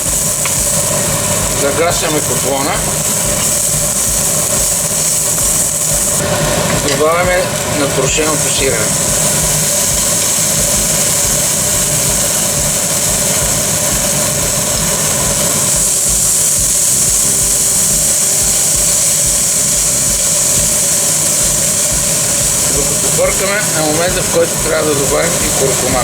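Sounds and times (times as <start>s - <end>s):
steady machine hum: 0.0s - 26.0s.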